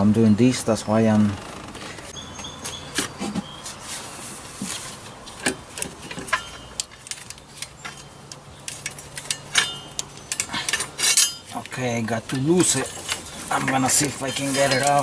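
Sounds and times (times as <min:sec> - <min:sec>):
metal tools clinking: 0:05.4 - 0:15.0.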